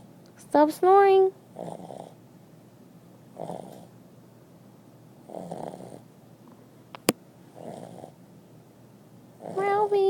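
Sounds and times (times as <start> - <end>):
dog snoring: 1.5 - 2.2, 3.3 - 4.0, 5.2 - 6.1, 7.6 - 8.2, 9.4 - 9.9.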